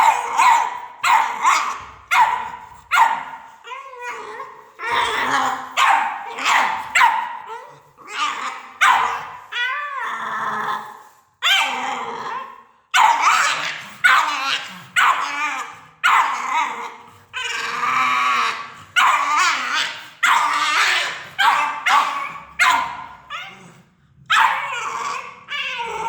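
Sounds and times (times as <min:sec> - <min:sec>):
puppy barking: 0:00.0 - 0:09.7, 0:12.5 - 0:16.4, 0:18.4 - 0:23.6, 0:24.3 - 0:26.0.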